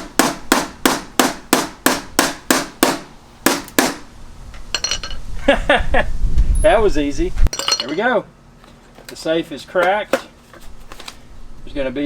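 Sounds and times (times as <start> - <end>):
hammer striking nail on steel: 0.0 - 4.0.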